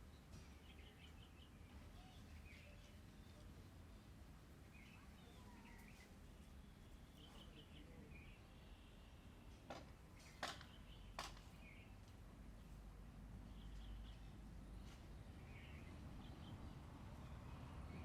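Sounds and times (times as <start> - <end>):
faint bird chirps: 0.0 - 4.0, 4.6 - 9.6, 13.4 - 18.0.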